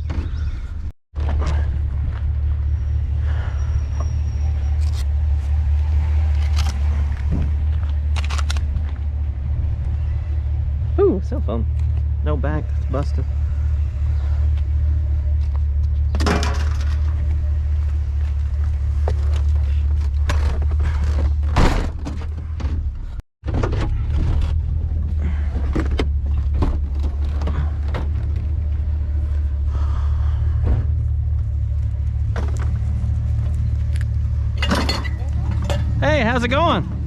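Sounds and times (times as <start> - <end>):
vehicle low rumble: 0.0 - 37.0
knocks and rattles: 15.9 - 17.3, 19.0 - 29.2.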